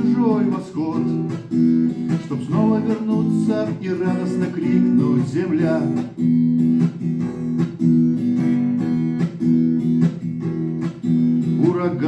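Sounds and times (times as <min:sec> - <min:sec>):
person singing: 0:00.0 - 0:01.4, 0:02.0 - 0:06.2, 0:11.6 - 0:12.0
acoustic guitar strumming chords: 0:00.0 - 0:12.0.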